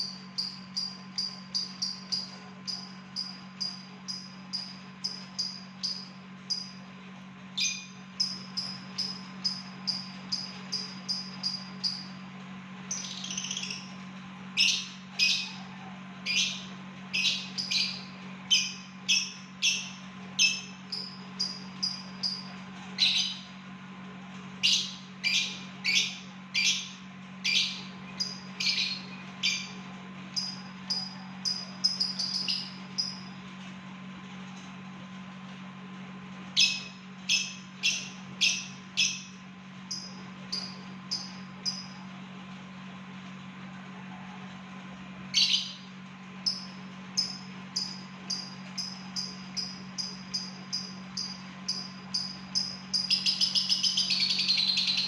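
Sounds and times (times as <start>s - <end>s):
lovebird chirping: 0.0s - 6.7s, 12.9s - 13.9s, 16.2s - 23.5s, 24.6s - 29.8s, 30.4s - 33.3s, 45.3s - 45.8s, 46.5s - 55.0s
low electrical hum: 0.0s - 55.0s.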